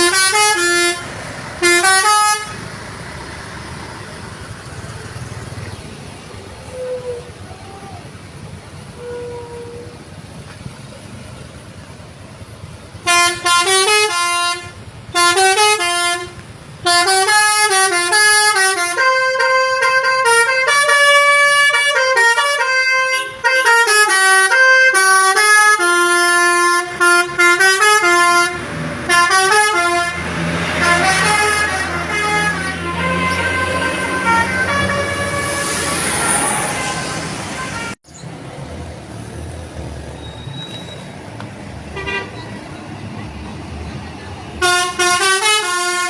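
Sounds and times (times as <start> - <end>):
bus horn playing melody: 0.0 - 2.8, 8.8 - 10.1, 13.0 - 38.0, 41.9 - 42.4, 44.6 - 46.0
engine rumble: 0.0 - 24.5, 25.2 - 46.0.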